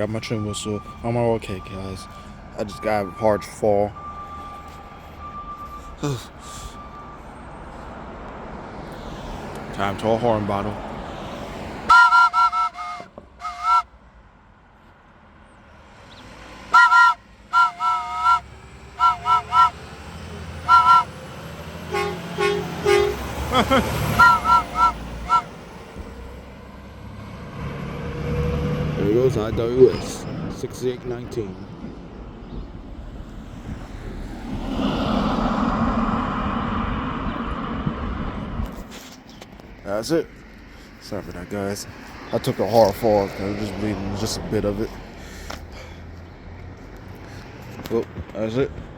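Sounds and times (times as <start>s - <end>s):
heavy truck engine rumble: 0.0s - 13.8s, 16.6s - 48.9s
multi-note train whistle toots: 11.9s - 13.9s, 16.7s - 19.8s, 20.6s - 21.2s, 21.9s - 23.2s, 24.1s - 25.6s.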